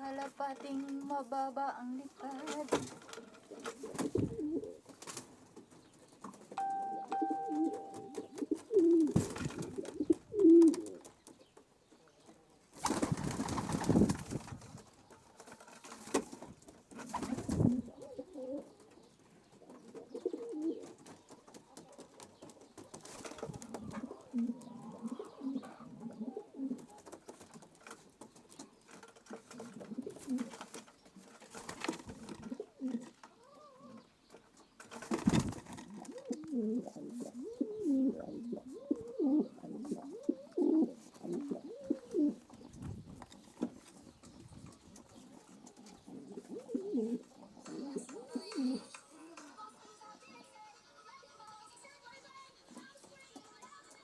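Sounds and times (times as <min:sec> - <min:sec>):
pigeons cooing: 0:02.2 - 0:05.0, 0:07.2 - 0:11.2, 0:15.1 - 0:34.1, 0:35.0 - 0:49.4.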